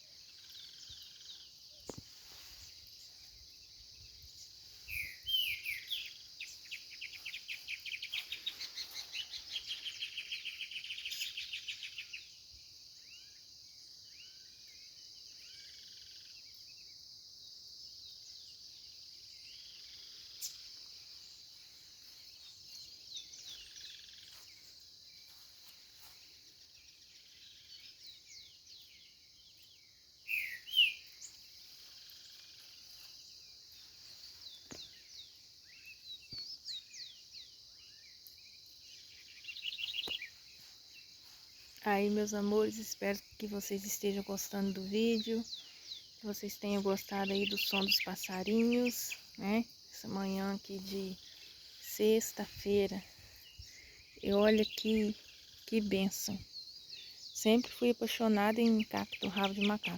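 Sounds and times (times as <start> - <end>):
songbirds calling: 0.0 - 59.9
high insect buzz: 17.8 - 57.8.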